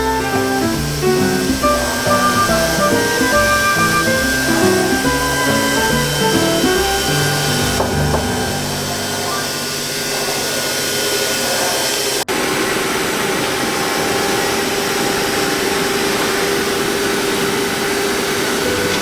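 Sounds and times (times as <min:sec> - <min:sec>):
milling machine cutting wood: 0:00.0 - 0:19.0.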